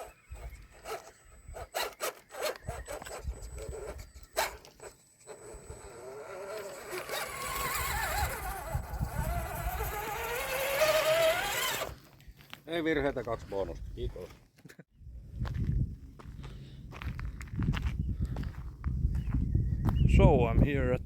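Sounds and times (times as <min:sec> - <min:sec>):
electric motor and drivetrain whining: 0:00.0 - 0:12.0.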